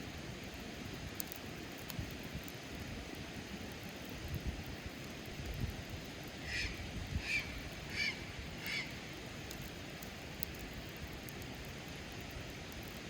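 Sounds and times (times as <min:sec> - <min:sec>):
low wind rumble: 0:02.0 - 0:12.7
bird calling high-pitched: 0:06.4 - 0:09.0.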